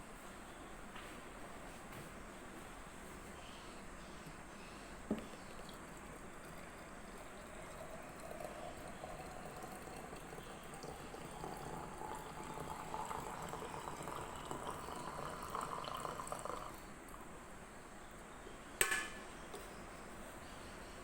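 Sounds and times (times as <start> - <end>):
water filling a container: 5.1 - 16.8.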